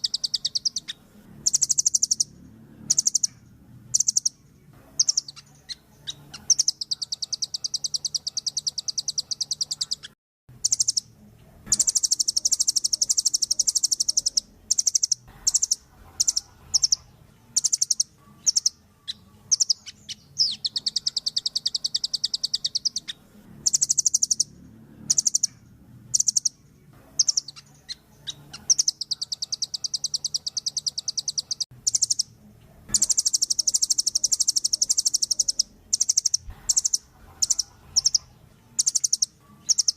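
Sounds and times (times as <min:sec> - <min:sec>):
bird calling in fast trills: 0:33.0 - 0:39.9.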